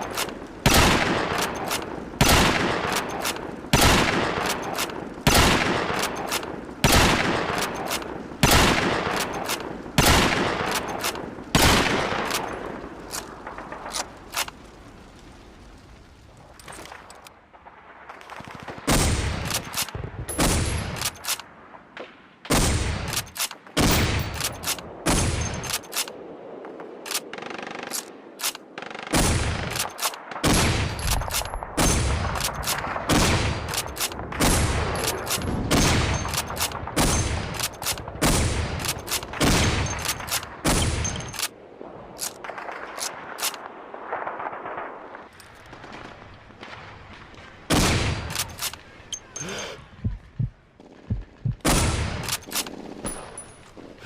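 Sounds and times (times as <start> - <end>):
rifle bolt clicks: 20.8 - 21.5, 23.1 - 23.6, 24.2 - 26.2, 27.9 - 28.6, 33.7 - 34.2, 43.0 - 43.6, 48.3 - 49.5, 52.2 - 52.8.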